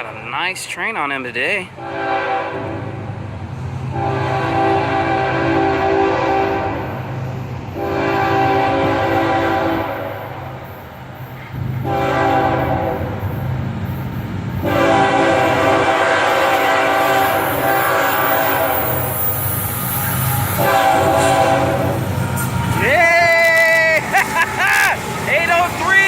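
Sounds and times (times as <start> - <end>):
train rumbling: 0.0 - 26.0
locomotive air horn blasts: 1.8 - 3.0, 3.9 - 7.0, 7.8 - 10.4, 11.8 - 13.5, 14.6 - 23.7.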